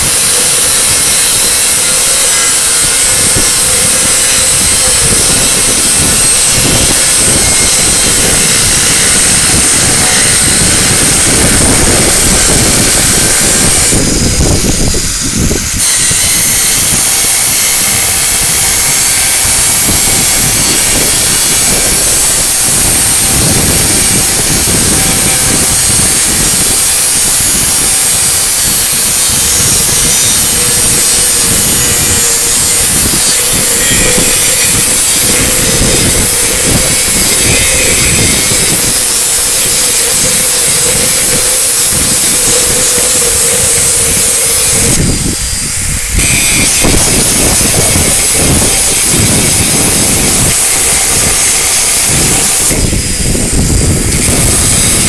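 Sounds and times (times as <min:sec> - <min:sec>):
angle grinder cutting stone: 0:00.0 - 0:55.0.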